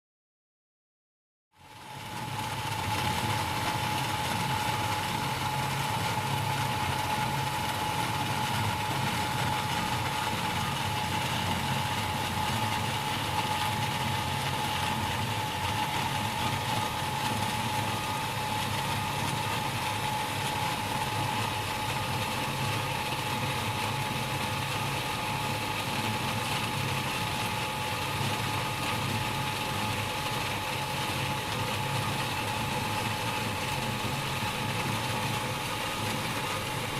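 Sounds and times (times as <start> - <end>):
electric water pump running: 1.6 - 36.9.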